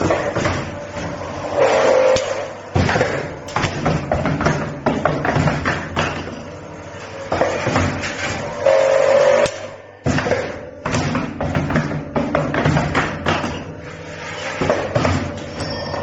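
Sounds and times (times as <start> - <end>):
bending machine clacks and thumps: 2.8 - 6.4, 10.0 - 13.7
brief held tone: 15.5 - 16.0.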